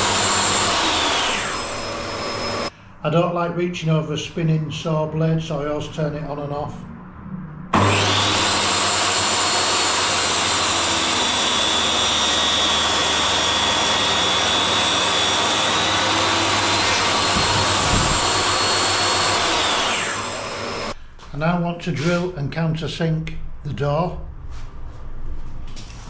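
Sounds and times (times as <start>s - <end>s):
table saw high whine: 0.0s - 2.7s, 7.7s - 21.0s.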